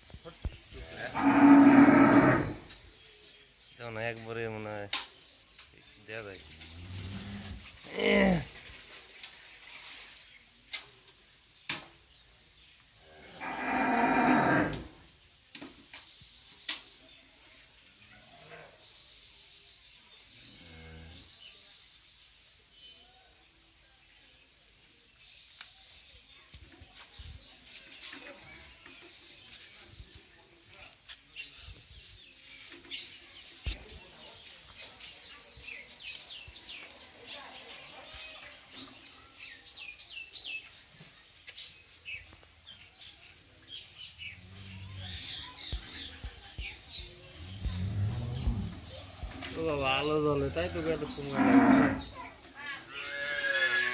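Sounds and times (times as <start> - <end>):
small birds chirping: 0.0 - 53.9
loud animal calls: 1.0 - 2.6, 51.3 - 52.1.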